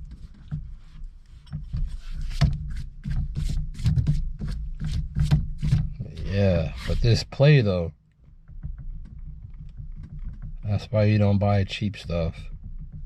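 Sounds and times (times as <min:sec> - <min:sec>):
steering wheel hub clicking and knocking: 0:08.2 - 0:13.0.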